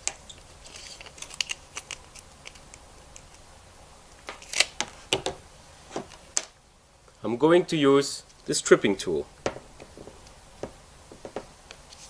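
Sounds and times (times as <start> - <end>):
power cable being handled: 0.0 - 3.4, 4.2 - 6.5.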